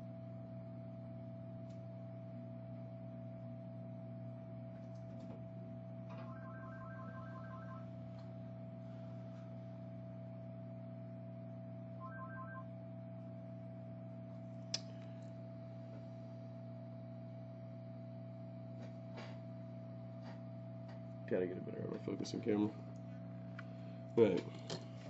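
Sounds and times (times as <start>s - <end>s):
low electrical hum: 0.0s - 25.0s
faint steady tone: 6.1s - 7.9s, 12.0s - 12.7s.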